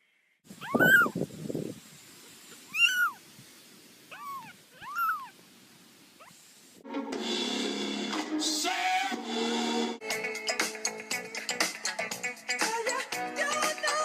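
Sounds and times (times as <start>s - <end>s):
cat meowing: 0.6s - 1.2s, 2.7s - 3.2s, 4.1s - 5.3s
music: 6.8s - 14.0s.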